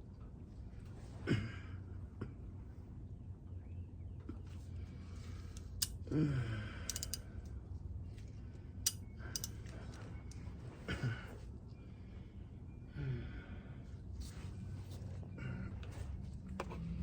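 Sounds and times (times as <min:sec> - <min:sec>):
ratchet clicking: 0:06.9 - 0:07.2, 0:08.9 - 0:09.6.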